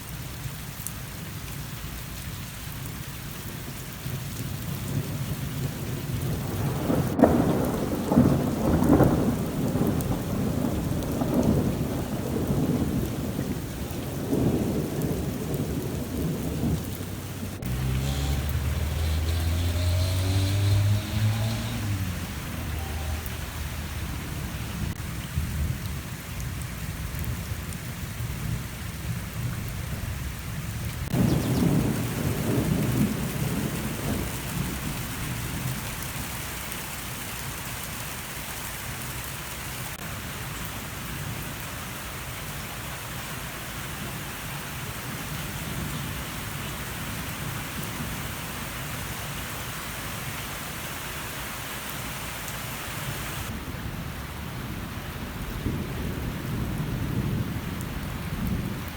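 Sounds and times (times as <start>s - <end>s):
steady rain falling: 0.0s - 58.9s
thunder rumbling: 4.0s - 36.5s, 53.4s - 58.9s.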